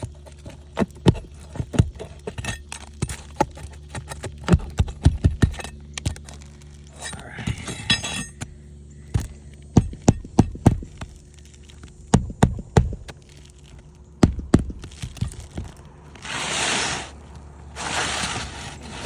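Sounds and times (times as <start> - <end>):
hammer blows on shingle roof: 9.1 - 11.1, 12.1 - 13.1
noisy scrape: 16.1 - 19.0.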